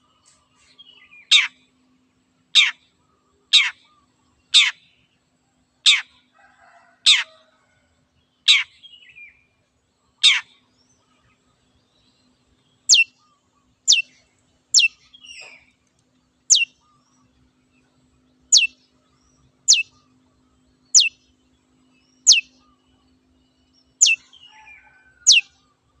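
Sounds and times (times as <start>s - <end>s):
bird giving sharp calls: 3.5s - 3.9s, 10.2s - 10.5s, 12.9s - 13.2s, 14.8s - 15.0s, 16.5s - 16.8s, 18.5s - 18.8s, 19.7s - 20.0s, 21.0s - 21.2s, 22.3s - 22.5s, 24.0s - 24.2s, 25.3s - 25.5s.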